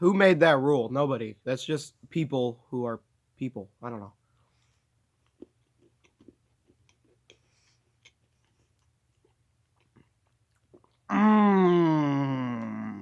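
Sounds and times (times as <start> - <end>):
mouth clicks of chewing: 5.2 - 11.1.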